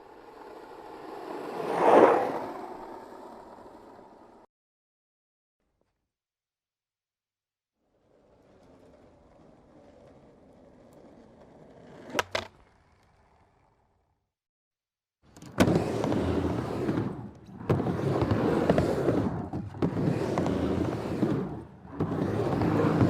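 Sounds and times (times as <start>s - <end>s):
skateboard rolling: 0.0s - 4.5s, 7.8s - 14.2s, 15.3s - 23.0s
skateboard clacks: 8.1s - 13.8s, 15.3s - 23.0s.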